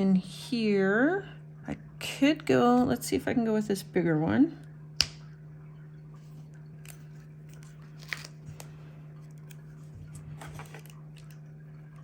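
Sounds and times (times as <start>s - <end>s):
paper rustling: 7.0s - 11.3s.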